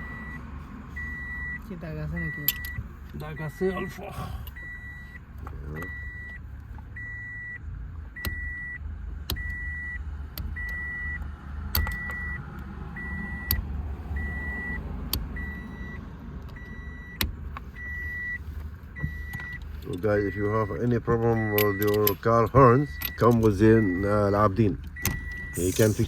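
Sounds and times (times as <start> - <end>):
car warning chime beeping: 0.0 - 11.2, 11.8 - 12.4, 13.0 - 26.0.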